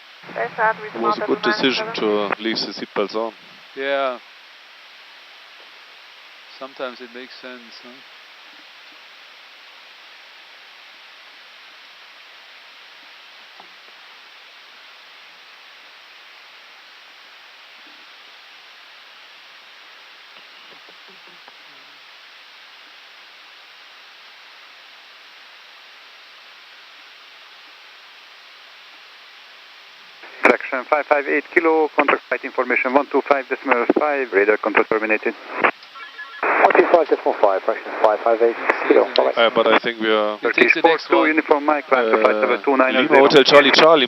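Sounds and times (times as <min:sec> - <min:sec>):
cockpit airflow noise: 0:00.2 - 0:03.7, 0:36.4 - 0:43.2.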